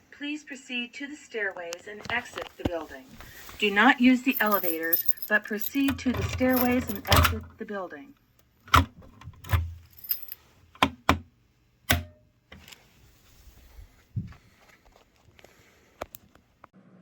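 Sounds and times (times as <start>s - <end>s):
handling clicks and knocks: 4.2s - 7.5s, 8.7s - 11.3s.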